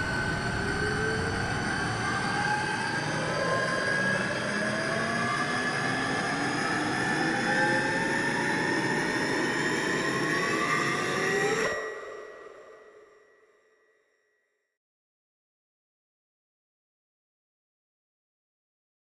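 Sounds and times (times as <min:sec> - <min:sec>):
rushing drone with rising tones: 0:00.0 - 0:11.9.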